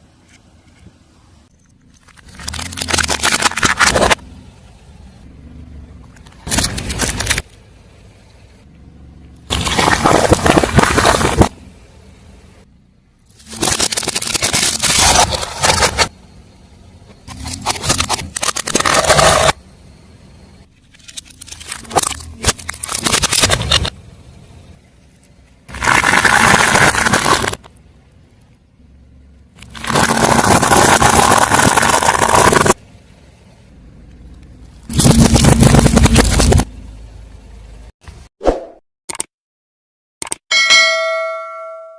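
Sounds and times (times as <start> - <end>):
tyre crushing objects: 9.5 - 11.6.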